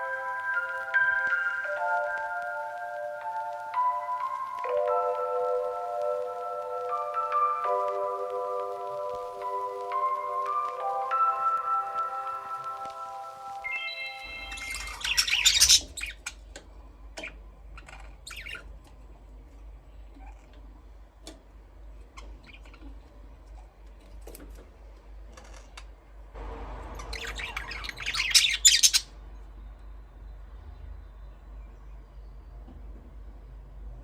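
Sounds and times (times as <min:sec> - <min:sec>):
rising mallet chime: 0:10.0 - 0:15.1
budgies chirping and squawking: 0:14.2 - 0:16.4, 0:17.2 - 0:18.7, 0:27.0 - 0:29.1
low hum: 0:25.0 - 0:34.0.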